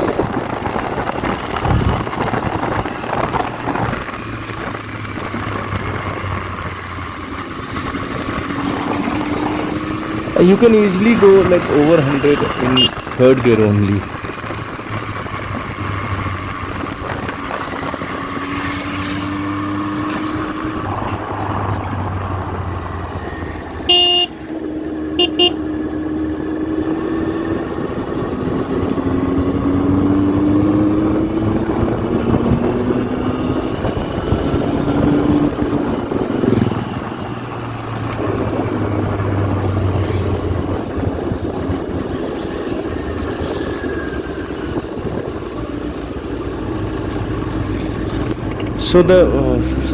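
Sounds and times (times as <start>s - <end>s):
motorcycle engine revving: 0.0s - 49.9s
vehicle horn toots: 11.6s - 13.5s, 23.8s - 24.4s, 25.1s - 25.7s.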